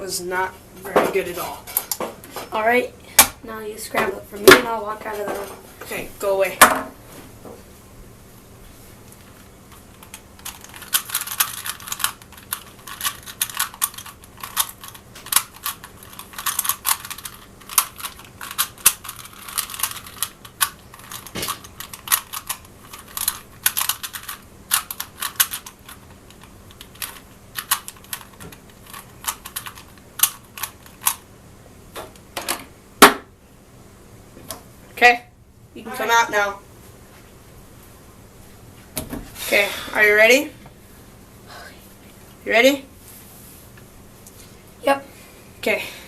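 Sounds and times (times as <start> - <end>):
plastic puzzle cube clicking: 10.0 - 31.2.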